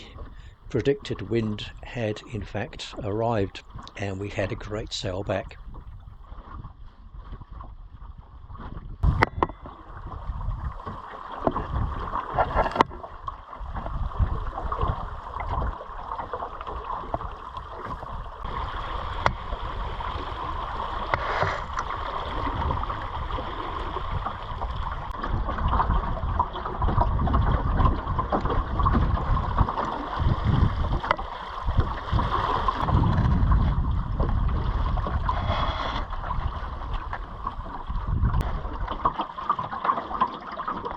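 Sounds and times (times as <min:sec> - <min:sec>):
water rushing along hull: 0:00.0 - 0:40.9
wind rumbling on microphone: 0:03.6 - 0:39.6.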